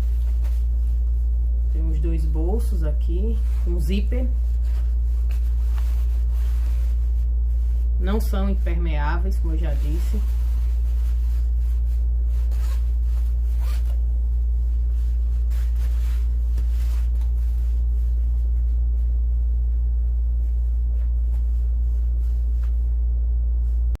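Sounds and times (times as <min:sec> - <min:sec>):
jacket fabric rustling: 0:00.0 - 0:24.0
low hum: 0:00.0 - 0:24.0
zipper: 0:12.4 - 0:14.0.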